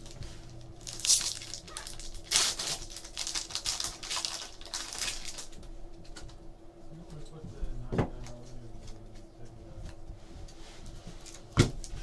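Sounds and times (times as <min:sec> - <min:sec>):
cards and wrappers rustling: 0:00.0 - 0:05.6.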